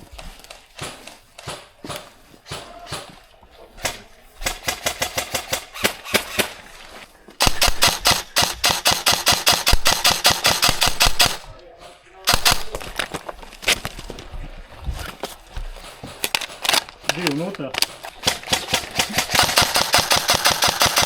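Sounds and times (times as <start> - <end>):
airsoft rifles firing full auto: 3.8 - 6.8, 7.4 - 11.5, 12.3 - 13.8, 15.8 - 21.0.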